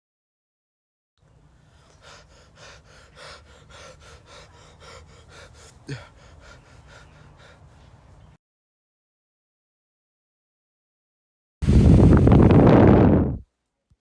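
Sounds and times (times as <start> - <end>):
person breathing heavily: 1.4 - 8.3
person gasping: 1.6 - 8.0.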